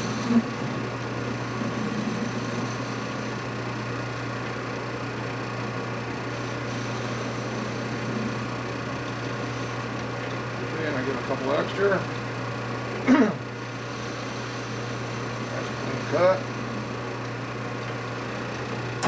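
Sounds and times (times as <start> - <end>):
machine tool humming: 0.0 - 11.3.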